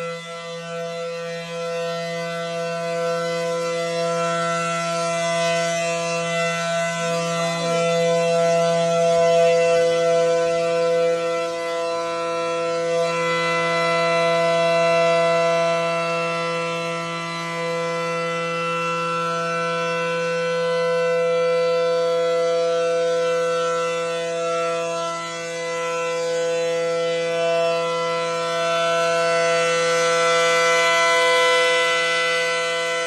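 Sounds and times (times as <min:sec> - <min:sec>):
tornado siren steady tone: 0:00.0 - 0:33.0.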